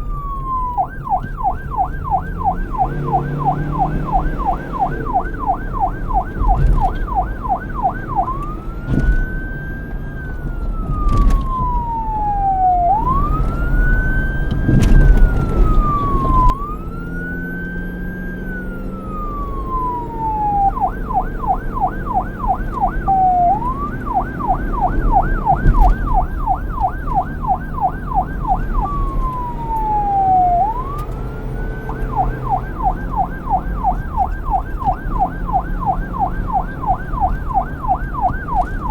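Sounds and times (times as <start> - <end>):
police siren yelp and wail: 0.0 - 38.9.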